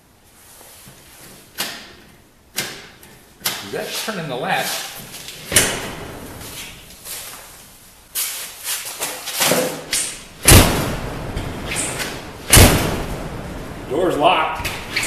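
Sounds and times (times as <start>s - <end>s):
door shutting with thud: 5.5s - 6.2s, 10.4s - 13.1s.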